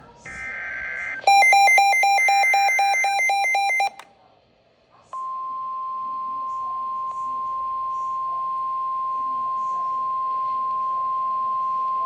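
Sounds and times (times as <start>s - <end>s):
data tones: 0.3s - 4.0s
fast electronic alarm beeping: 0.9s - 4.0s
steady alarm tone: 1.0s - 4.0s.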